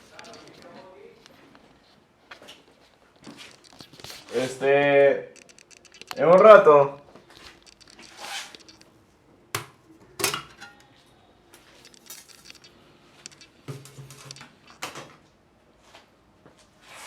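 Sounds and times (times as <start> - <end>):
small hard objects clicking: 5.3 - 8.9, 11.8 - 14.8.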